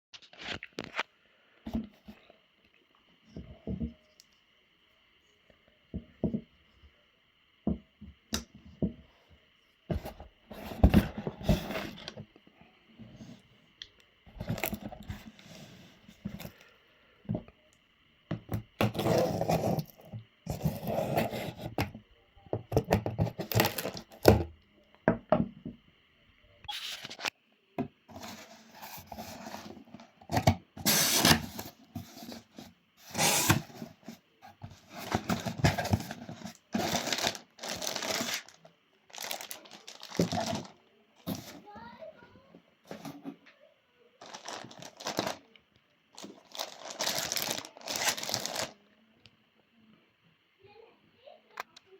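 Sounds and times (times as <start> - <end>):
packaging rustling and scraping: 9.9 - 12.2, 14.3 - 16.6, 18.8 - 22.0, 22.7 - 24.4, 26.7 - 27.4, 28.1 - 42.0, 42.9 - 43.4, 44.2 - 45.5, 46.2 - 48.8.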